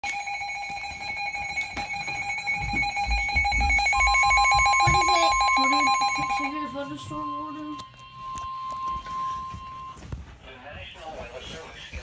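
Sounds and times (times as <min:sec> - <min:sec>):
pulsing electronic alert tones: 0:00.4 - 0:09.9.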